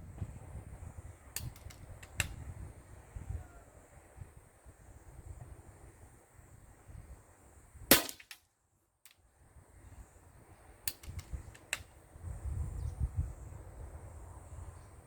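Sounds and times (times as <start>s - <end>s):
wind rumble on microphone: 0.0s - 8.0s, 9.3s - 15.0s
light clicks: 1.4s - 2.4s, 10.9s - 11.9s
air rifle shot: 7.9s - 8.4s.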